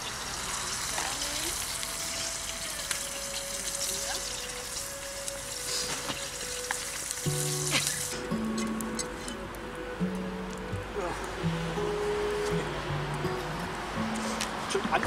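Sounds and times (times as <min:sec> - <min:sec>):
food sizzling in a pan: 0:00.0 - 0:09.3
guitar music: 0:01.7 - 0:15.0.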